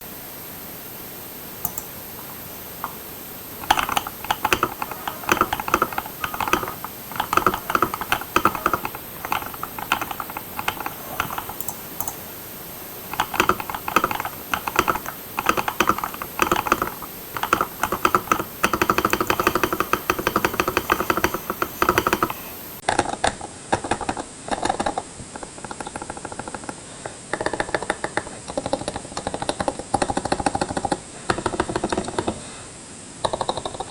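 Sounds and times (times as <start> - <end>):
keyboard keystroke clicks: 1.6 - 12.3, 13.1 - 22.6.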